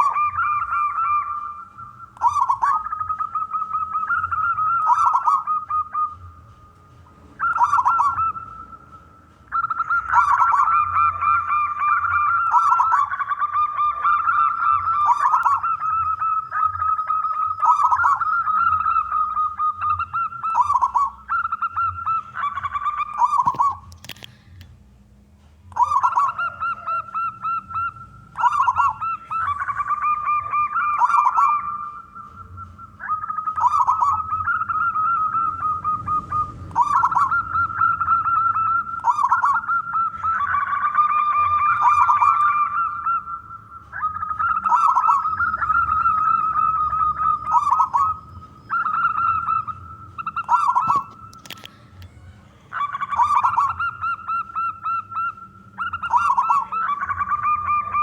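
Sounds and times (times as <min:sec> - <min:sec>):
dove trilled cooing song: 0:00.0 - 0:24.6, 0:25.3 - 0:58.0.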